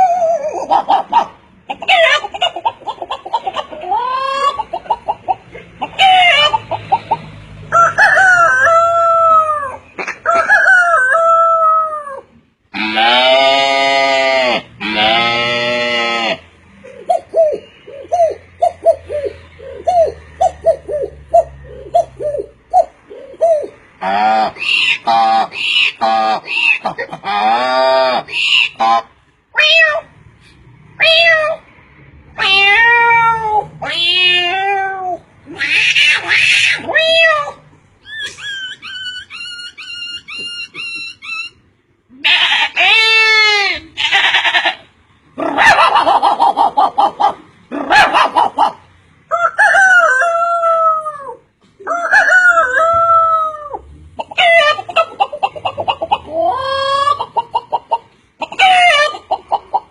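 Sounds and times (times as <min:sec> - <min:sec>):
person imitating animal calls: 0:00.0 - 0:02.6, 0:03.6 - 0:04.6, 0:11.2 - 0:30.1, 0:32.4 - 0:41.5, 0:50.1 - 0:57.5, 0:58.4 - 0:59.3.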